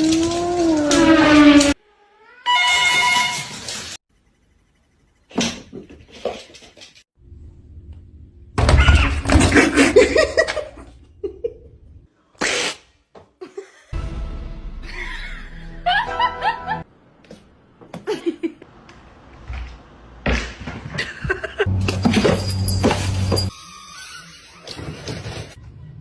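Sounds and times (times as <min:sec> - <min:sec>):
background music: 0:14.0 - 0:16.8
people laughing: 0:14.8 - 0:16.8.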